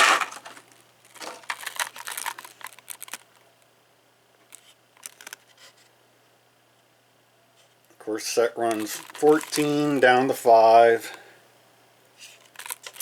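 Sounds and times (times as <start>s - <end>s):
packaging rustling: 0.0s - 3.4s, 4.5s - 5.6s, 8.6s - 10.7s, 12.2s - 13.0s.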